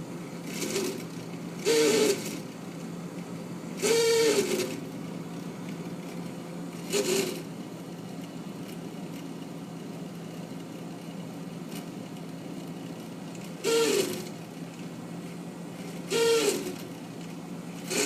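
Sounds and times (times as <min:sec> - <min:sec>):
freezer humming: 0:00.0 - 0:18.0
loud whining squeal: 0:01.6 - 0:02.3, 0:03.8 - 0:04.8, 0:13.6 - 0:14.3, 0:16.1 - 0:16.8.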